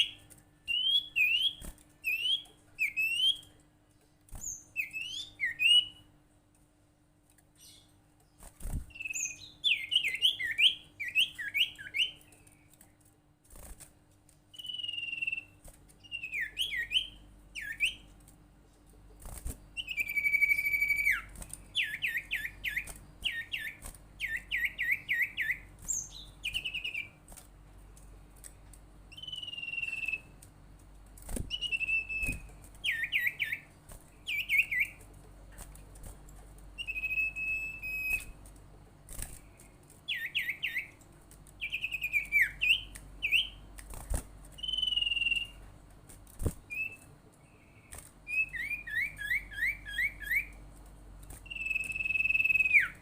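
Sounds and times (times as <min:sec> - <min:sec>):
bird singing chirps and whistles: 0:00.0 - 0:03.5, 0:04.4 - 0:06.1, 0:08.6 - 0:12.3, 0:14.5 - 0:18.0, 0:19.8 - 0:27.2, 0:29.1 - 0:30.3, 0:31.4 - 0:35.0, 0:36.8 - 0:38.4, 0:40.1 - 0:41.0, 0:41.6 - 0:43.6, 0:44.6 - 0:45.6, 0:46.7 - 0:47.1, 0:48.2 - 0:50.6, 0:51.4 - 0:53.0.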